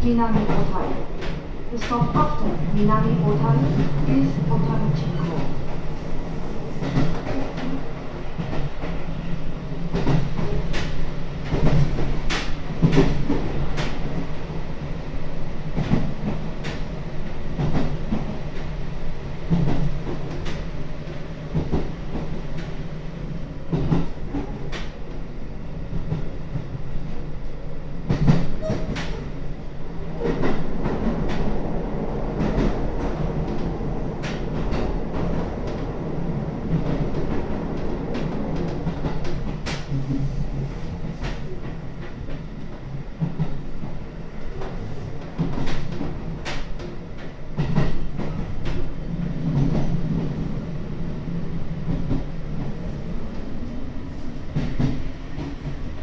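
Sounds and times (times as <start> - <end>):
train interior hum: 0.0 - 56.0.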